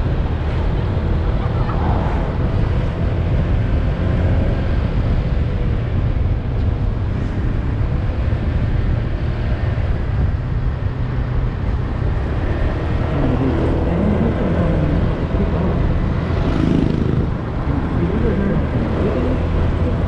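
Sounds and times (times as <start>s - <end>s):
motorcycle engine hum: 0.0s - 20.0s.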